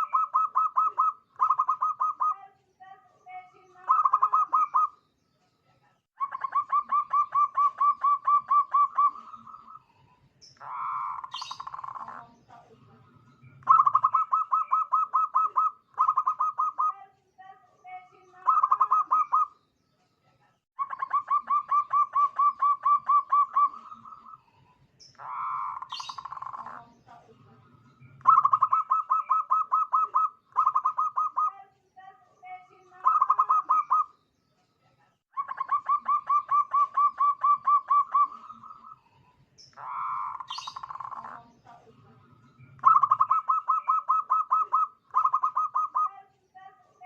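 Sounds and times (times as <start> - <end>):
dove cooing: 0.0 - 2.4, 3.8 - 4.9, 6.2 - 9.8, 10.6 - 12.7, 13.5 - 17.0, 18.4 - 19.5, 20.8 - 24.4, 25.2 - 27.0, 28.0 - 31.5, 33.0 - 34.1, 35.4 - 39.0, 39.8 - 46.1.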